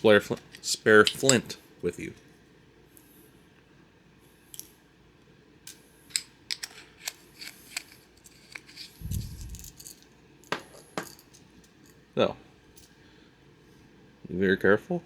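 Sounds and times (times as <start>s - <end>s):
small metal clicks and rattles: 0.3s - 1.5s, 5.7s - 12.0s.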